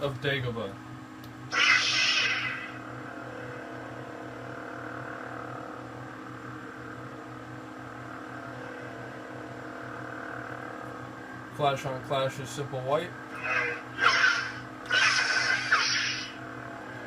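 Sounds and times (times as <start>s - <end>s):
lightsaber idle hum: 0.0s - 17.0s
lightsaber ignition sound: 1.5s - 2.8s, 13.3s - 16.4s.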